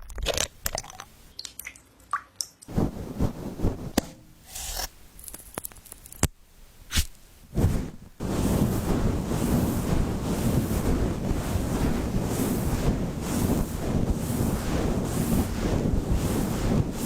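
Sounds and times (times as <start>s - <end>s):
wind rushing on microphone: 7.5s - 17.0s.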